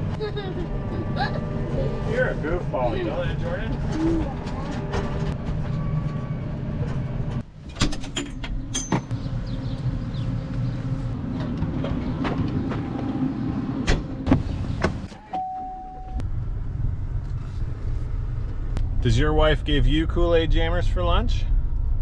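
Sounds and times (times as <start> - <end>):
vehicle engine running: 0.0 - 7.6, 9.1 - 15.1, 16.1 - 22.0
short steady tone: 15.4 - 16.2.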